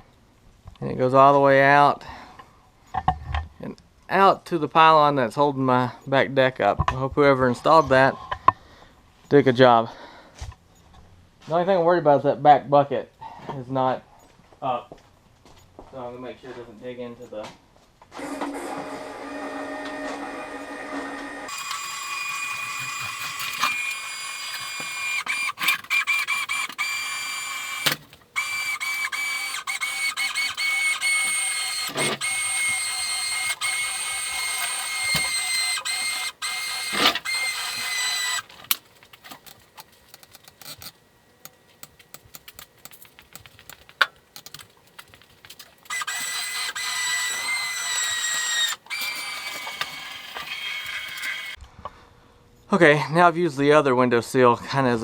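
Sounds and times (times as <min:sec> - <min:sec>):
winch whining: 0:18.2 - 0:51.6
sharp clicks: 0:21.5 - 0:51.6.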